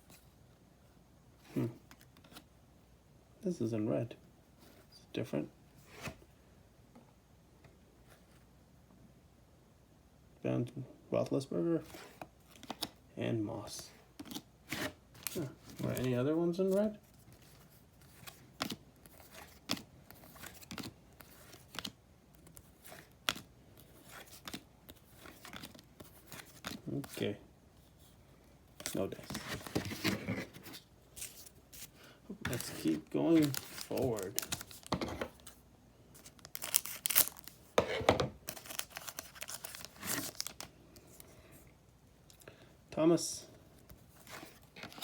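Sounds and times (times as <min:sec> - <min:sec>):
foil wrapper tearing and crinkling: 0:36.3 - 0:37.6, 0:38.4 - 0:40.6.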